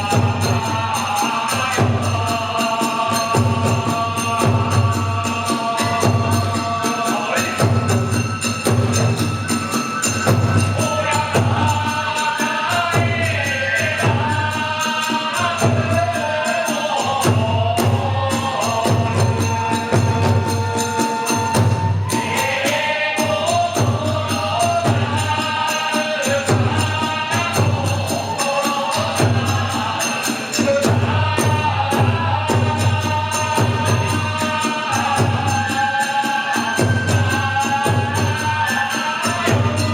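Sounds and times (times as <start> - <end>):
taiko drum beating: 0.0 - 12.0, 17.2 - 25.6, 29.0 - 36.0
chanted melody: 0.0 - 15.8
hand cymbals clashing: 0.0 - 39.9.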